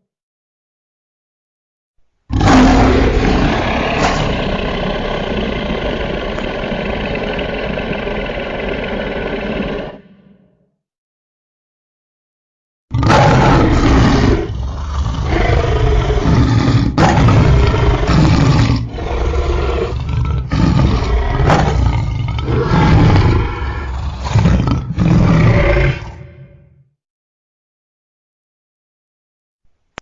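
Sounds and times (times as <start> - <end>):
deep angry roaring and growling: 2.3 - 10.5, 12.9 - 26.8.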